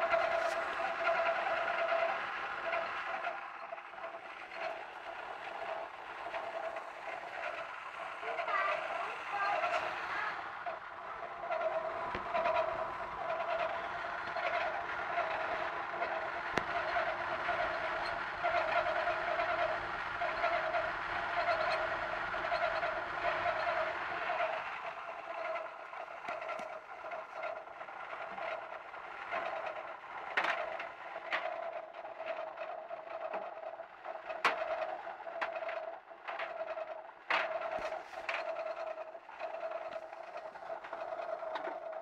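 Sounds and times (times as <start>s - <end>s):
tumble dryer whining tone: 0.0s - 30.6s.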